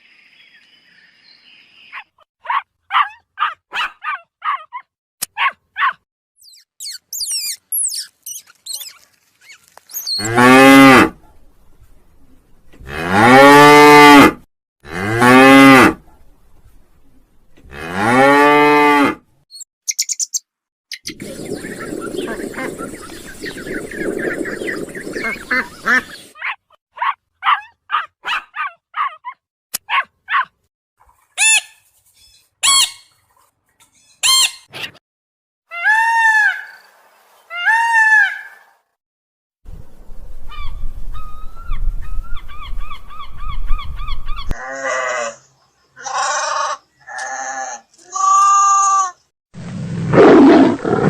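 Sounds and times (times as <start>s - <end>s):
animal pulsed chirps: 6.4s - 10.3s, 19.5s - 26.3s
rising and falling animal calls: 6.4s - 10.5s, 21.0s - 26.4s
animal clicking calls: 6.8s - 10.3s
harsh animal calls: 44.4s - 49.2s.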